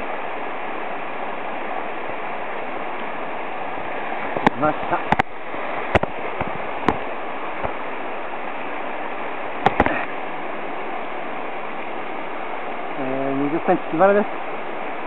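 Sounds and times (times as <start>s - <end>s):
stream rushing: 0.0s - 15.0s
sharp clicks and knocks: 5.9s - 7.0s, 9.6s - 10.0s.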